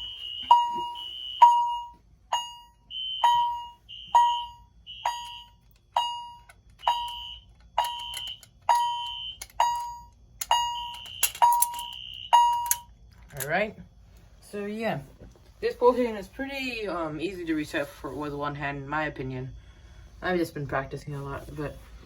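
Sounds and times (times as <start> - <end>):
high short alarm tone: 0.0 - 12.9
fire alarm chime ringing: 0.0 - 13.0.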